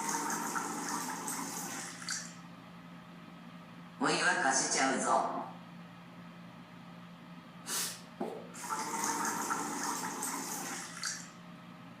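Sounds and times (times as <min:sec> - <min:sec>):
water gushing and pouring: 0:00.0 - 0:02.3, 0:08.6 - 0:11.3.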